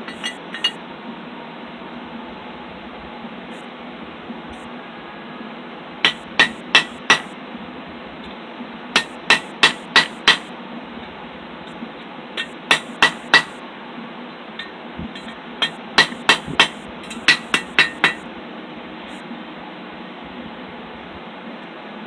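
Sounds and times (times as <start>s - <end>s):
hammer ringing on hot steel: 0.0s - 0.8s, 6.0s - 7.4s, 8.9s - 10.5s, 12.4s - 13.6s, 14.6s - 18.2s
steady low hiss: 0.0s - 22.0s.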